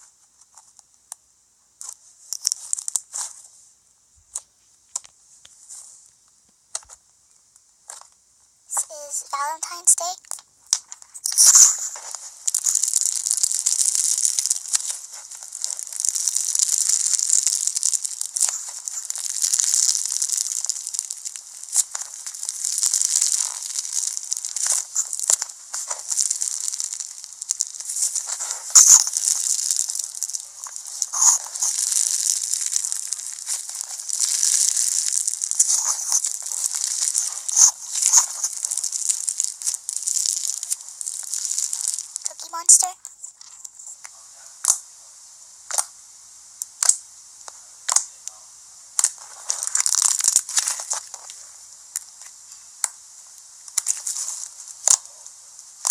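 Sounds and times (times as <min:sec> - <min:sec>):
slime squishing and crackling: 0:01.8 - 0:03.3, 0:08.7 - 0:43.8, 0:49.0 - 0:52.9, 0:53.7 - 0:55.9.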